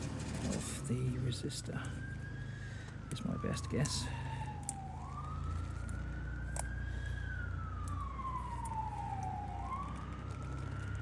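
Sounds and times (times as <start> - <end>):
emergency siren wailing: 0.4 - 11.0.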